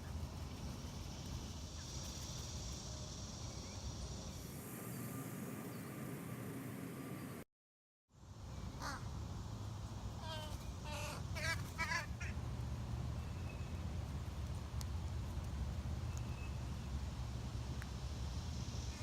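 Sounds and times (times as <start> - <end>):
bird calling: 10.2 - 12.4.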